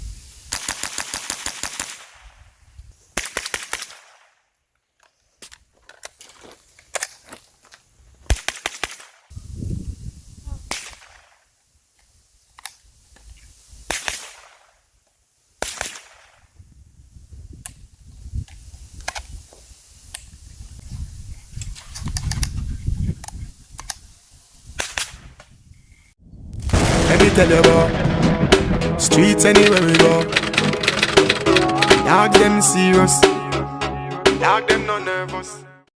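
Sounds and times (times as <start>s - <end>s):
gunshots: 0.5s - 2.3s, 13.9s - 14.7s, 15.6s - 16.4s, 26.6s - 31.5s
low rumble: 26.2s - 29.8s.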